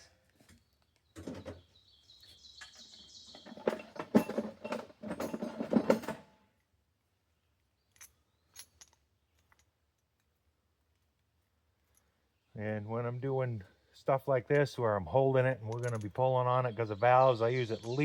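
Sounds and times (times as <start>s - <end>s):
wire ties rustling and clattering: 2.6s - 6.2s, 7.9s - 12.2s, 15.6s - 16.2s.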